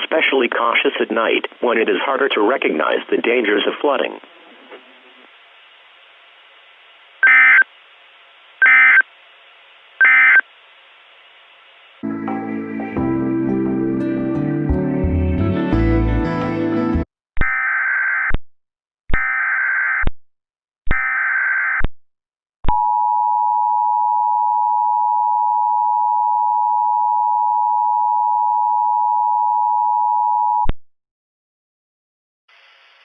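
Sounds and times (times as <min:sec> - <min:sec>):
screechy digital header bursts: 0:07.2 - 0:07.6, 0:08.6 - 0:09.0, 0:10.0 - 0:10.4.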